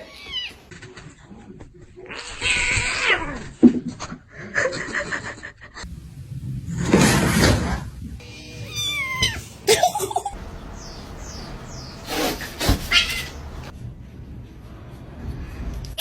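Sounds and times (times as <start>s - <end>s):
cat meowing: 8.2s - 9.5s, 12.6s - 13.7s.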